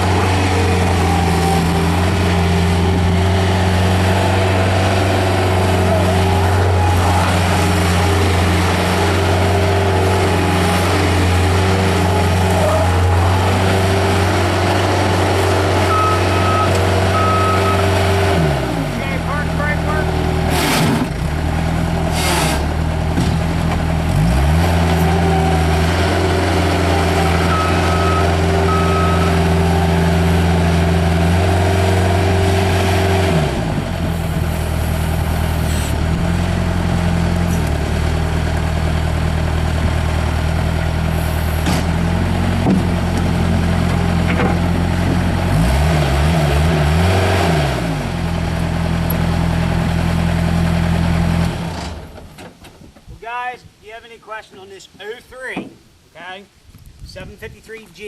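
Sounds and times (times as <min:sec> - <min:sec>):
diesel engine revving: 0:00.0 - 0:52.4
short high beeps: 0:15.9 - 0:17.8, 0:27.5 - 0:29.5.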